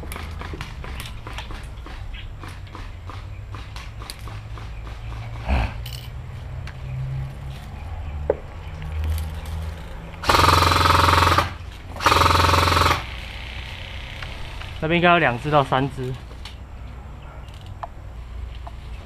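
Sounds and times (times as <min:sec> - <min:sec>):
airsoft rifle full-auto bursts: 0:10.2 - 0:14.8.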